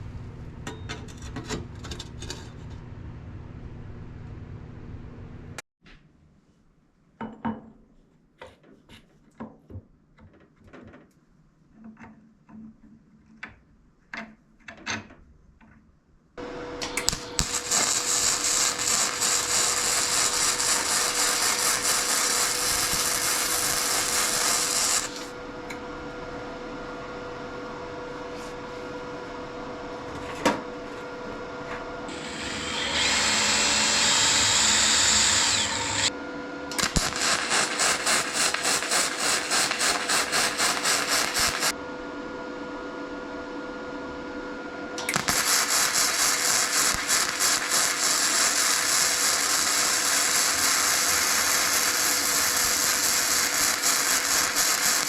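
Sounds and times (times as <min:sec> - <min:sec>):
power tool running: 0:16.4 - 0:25.8, 0:32.1 - 0:41.8, 0:45.0 - 0:55.0.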